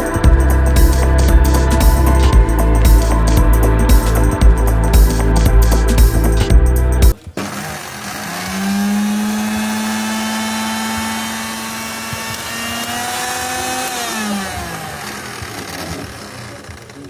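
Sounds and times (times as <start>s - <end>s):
mixer grinder motor running: 7.2s - 17.0s.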